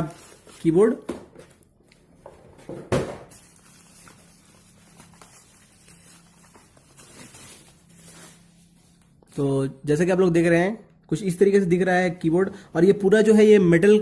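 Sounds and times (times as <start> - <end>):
faint steady hum: 0.0 - 14.0
packaging rustling: 3.3 - 9.2.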